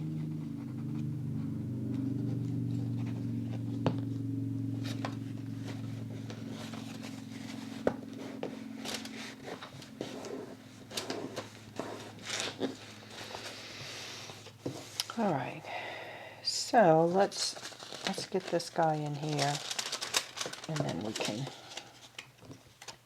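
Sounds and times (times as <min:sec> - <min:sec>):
low hum: 0:00.0 - 0:16.4
paper rustling and crinkling: 0:05.6 - 0:15.1, 0:17.0 - 0:23.0.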